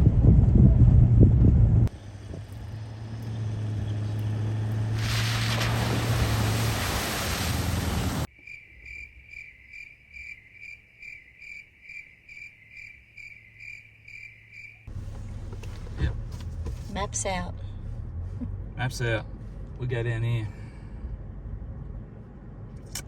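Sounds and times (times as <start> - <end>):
vehicle running: 0.0 - 8.3, 14.9 - 23.0
insect chirping: 8.3 - 14.9.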